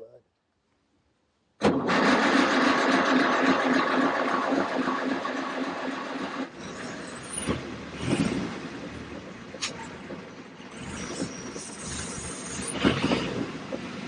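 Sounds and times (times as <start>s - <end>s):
car engine running: 1.8s - 14.0s.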